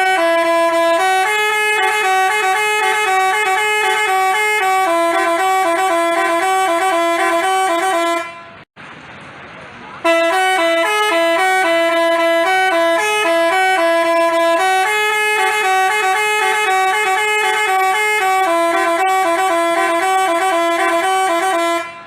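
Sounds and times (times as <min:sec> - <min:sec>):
musical bus horn playing tune: 0:00.0 - 0:08.7, 0:10.0 - 0:22.0.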